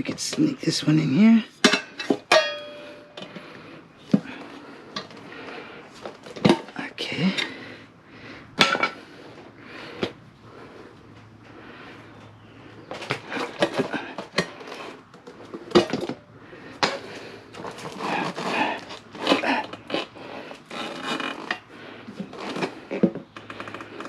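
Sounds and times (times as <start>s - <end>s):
tire levers clinking on rim: 1.5s - 3.5s.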